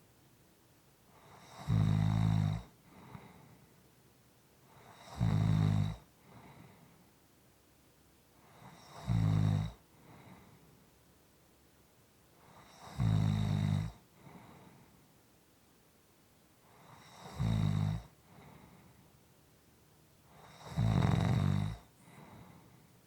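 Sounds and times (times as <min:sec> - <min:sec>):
person snoring: 0:01.2 - 0:02.7, 0:04.8 - 0:06.0, 0:20.3 - 0:22.5
soft breath out: 0:02.8 - 0:03.8, 0:06.2 - 0:07.2, 0:09.9 - 0:10.9, 0:14.1 - 0:15.1, 0:18.2 - 0:19.2, 0:22.0 - 0:23.0.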